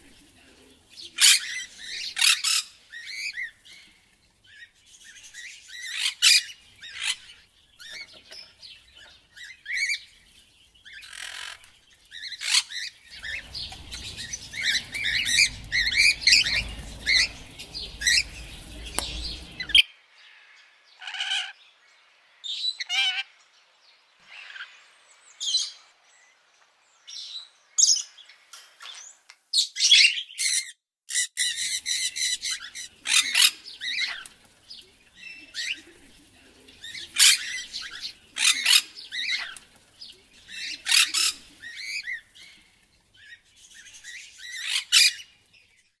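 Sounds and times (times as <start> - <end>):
parrots squawking and chirping: 0.0 - 10.2, 10.9 - 19.8, 21.0 - 21.5, 22.8 - 23.3, 29.7 - 45.5
low rumble: 13.2 - 19.8.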